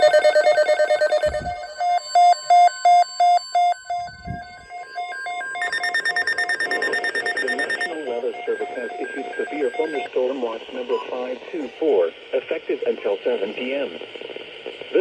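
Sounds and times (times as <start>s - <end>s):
electronic alert beeping: 0.0s - 10.1s.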